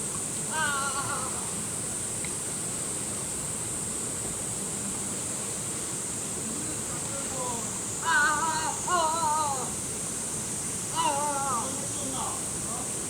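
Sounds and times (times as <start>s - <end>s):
high hiss: 0.0s - 13.0s
person singing or calling: 0.5s - 1.6s, 8.0s - 9.8s
stream rushing: 5.7s - 13.0s.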